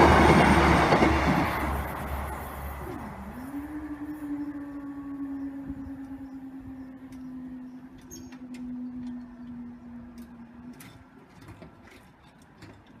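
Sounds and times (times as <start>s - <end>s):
level crossing warning alarm: 2.9s - 10.8s.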